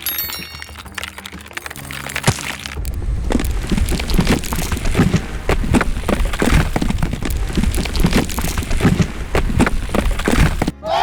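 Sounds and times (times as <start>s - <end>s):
clattering knocks and cracks: 0.0s - 10.8s
steady low rumble: 2.8s - 10.7s.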